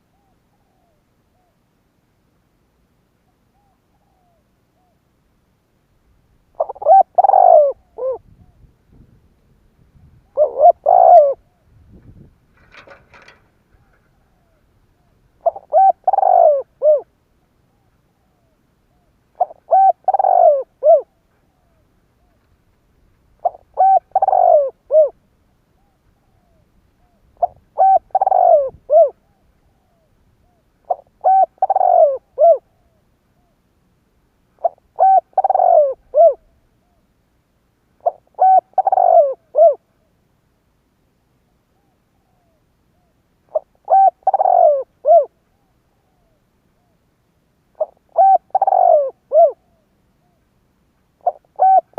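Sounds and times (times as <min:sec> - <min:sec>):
dove cooing: 0:06.5 - 0:08.7, 0:10.0 - 0:22.5, 0:23.4 - 0:33.6, 0:34.6 - 0:37.1, 0:38.0 - 0:40.0, 0:41.8 - 0:47.0, 0:47.8 - 0:50.4, 0:51.2 - 0:51.9.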